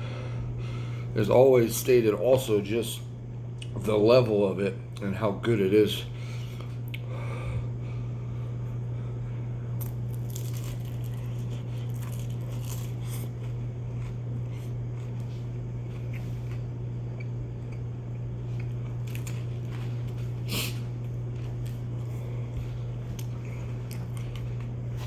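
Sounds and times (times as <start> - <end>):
steady low hum: 0.0 - 25.0
person chewing food: 9.7 - 25.0.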